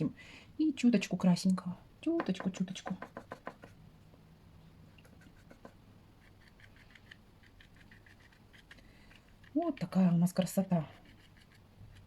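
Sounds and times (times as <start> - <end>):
low steady hum: 0.0 - 12.0
paintbrush dabbing on paper: 2.4 - 3.8, 5.0 - 12.0.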